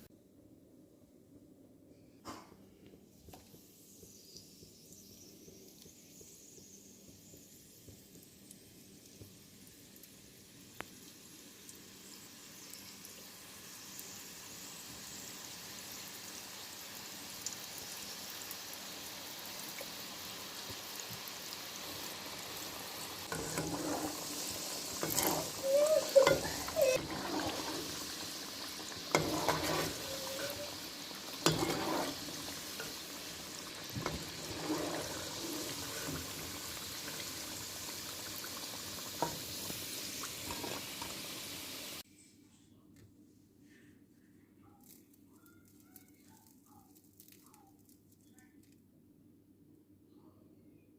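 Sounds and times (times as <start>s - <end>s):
liquid hissing in cooking pot: 3.6s - 42.0s
liquid pouring and stirring: 23.2s - 37.7s
short squeaky scrapes: 25.0s - 28.0s, 29.1s - 30.8s, 31.4s - 32.9s.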